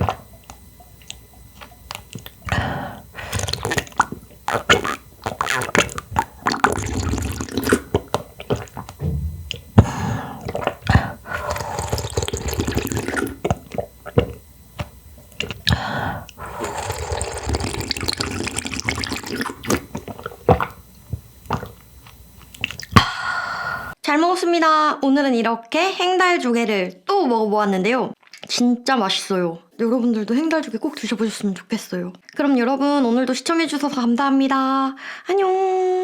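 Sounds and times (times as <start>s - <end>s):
person chewing: 0.0s - 24.0s
wet mouth clicks: 0.0s - 24.0s, 28.2s - 28.6s
person slurping broth: 2.1s - 20.8s, 21.5s - 21.8s.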